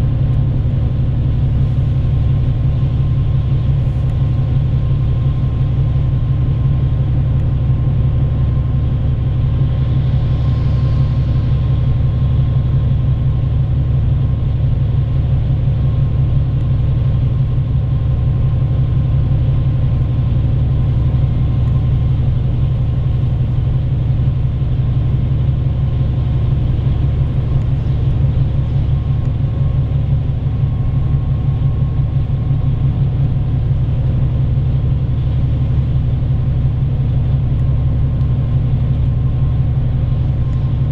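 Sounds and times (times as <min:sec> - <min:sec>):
bus engine rumble: 0:00.0 - 0:40.9
faint steady whine: 0:00.0 - 0:40.9
road noise: 0:00.0 - 0:40.9.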